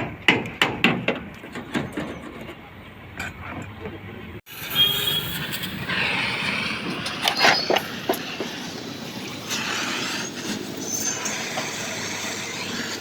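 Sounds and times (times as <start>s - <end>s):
metal scraping and screeching: 4.6s - 13.0s
thin high squeals: 6.8s - 12.9s.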